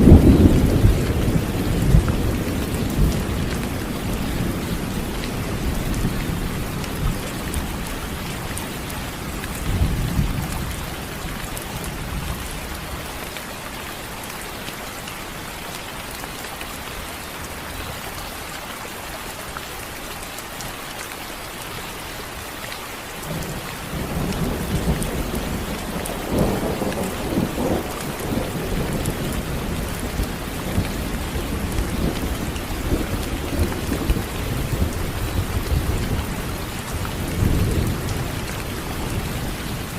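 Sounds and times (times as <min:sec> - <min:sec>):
rolling thunder: 0:00.0 - 0:07.7
rain hissing: 0:00.0 - 0:39.9.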